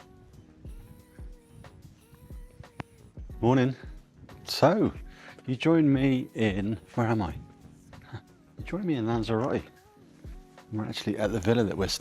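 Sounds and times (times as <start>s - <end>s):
soft beat of low thumps: 0.0s - 5.2s, 5.9s - 7.8s, 8.6s - 9.4s, 10.2s - 10.6s
background music with held notes: 0.0s - 12.0s.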